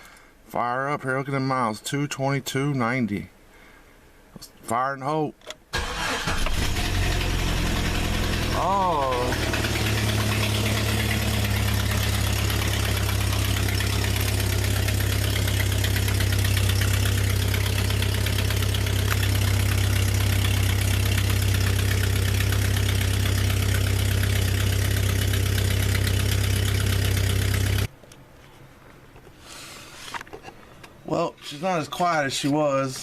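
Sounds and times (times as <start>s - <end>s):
engine idling with exhaust leak: 5.8s - 27.9s.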